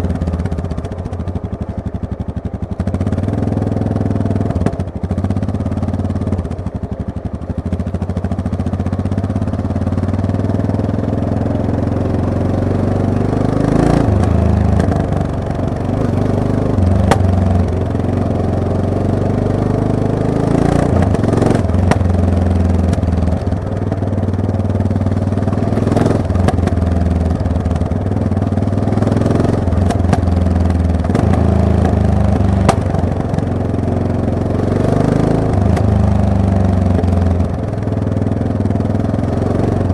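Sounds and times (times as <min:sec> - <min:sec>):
motorcycle engine revving: 0:00.0 - 0:39.9
sharp knocks: 0:13.8 - 0:16.1, 0:16.8 - 0:17.8, 0:20.7 - 0:24.0, 0:25.4 - 0:33.5.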